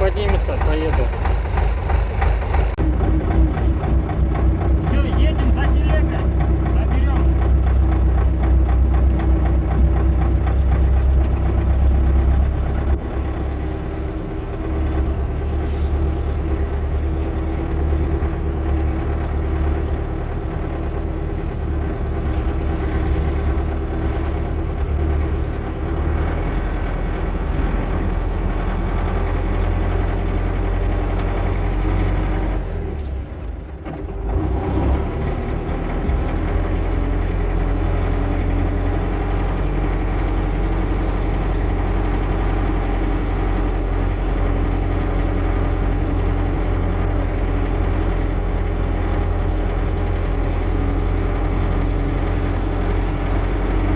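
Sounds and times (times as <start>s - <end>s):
tractor engine rumbling: 0.0s - 53.9s.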